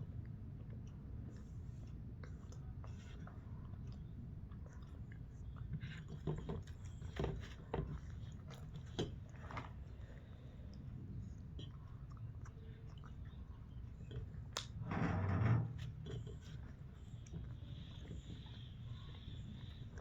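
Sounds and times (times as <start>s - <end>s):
person chewing food: 0.2s - 14.8s.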